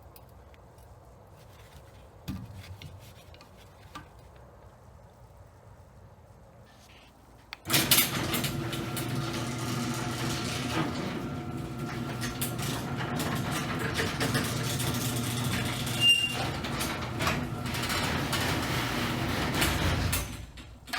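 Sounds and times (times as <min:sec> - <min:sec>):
garage door opener click: 0:07.6 - 0:20.9
garage door opener motor running: 0:07.7 - 0:20.5.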